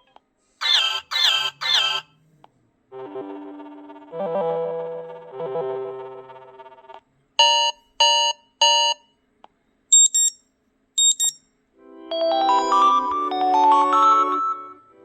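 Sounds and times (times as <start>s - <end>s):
electronic alarm beeps: 0.7s - 2.1s, 10.0s - 11.5s
musical ringtone: 3.0s - 7.8s, 12.0s - 15.0s
high-pitched double chirps: 10.0s - 10.4s, 11.0s - 11.4s.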